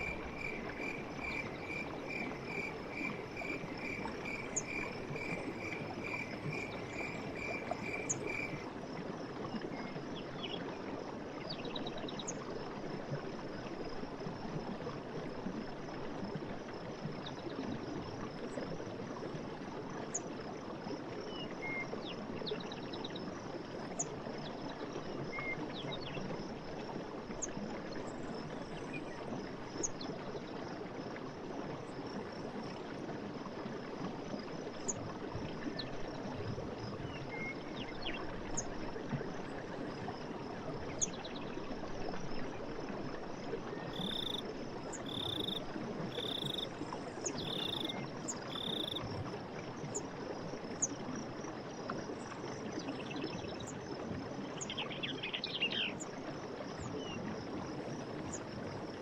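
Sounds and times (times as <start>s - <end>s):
insects droning: 0.0s - 9.0s, 34.1s - 52.8s
stream running water: 0.0s - 59.0s.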